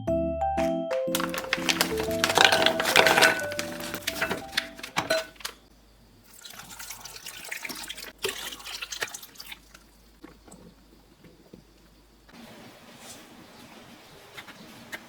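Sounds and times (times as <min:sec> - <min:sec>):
tap water splashing in sink: 0:06.4 - 0:11.8.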